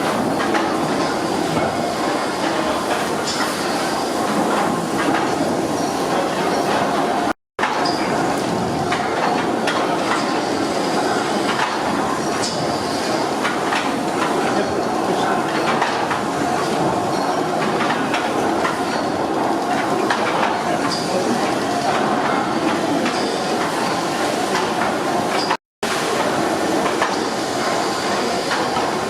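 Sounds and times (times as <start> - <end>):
steam engine clatter: 0.0 - 29.0.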